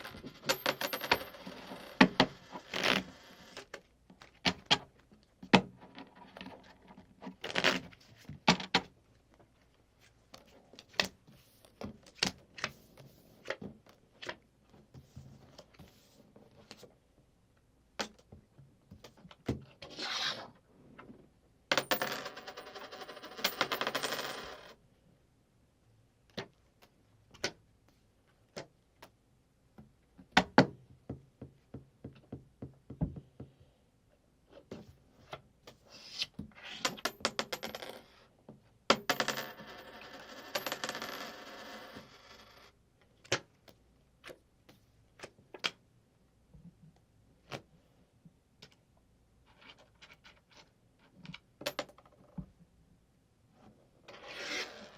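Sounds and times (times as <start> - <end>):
coins clinking and rattling: 0.0 - 3.5, 21.7 - 24.7.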